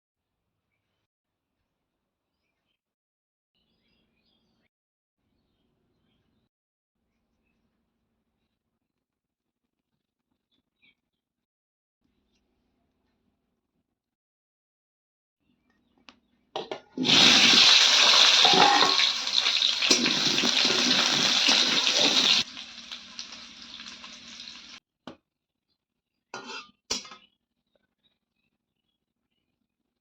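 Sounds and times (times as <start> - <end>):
water pouring in a stream: 17.0 - 24.4
water trickling: 17.1 - 24.8.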